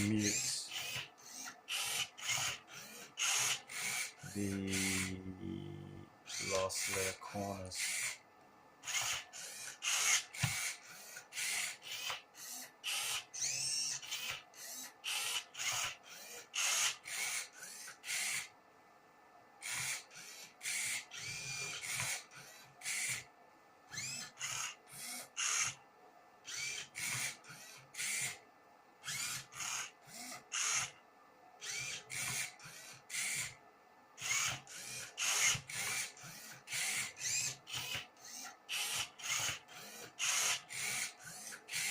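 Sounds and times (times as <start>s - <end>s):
robot motors whirring: 0.0s - 8.2s, 8.8s - 18.5s, 19.6s - 23.2s, 23.9s - 25.8s, 26.5s - 28.4s, 29.0s - 31.0s, 31.6s - 33.6s, 34.2s - 41.9s.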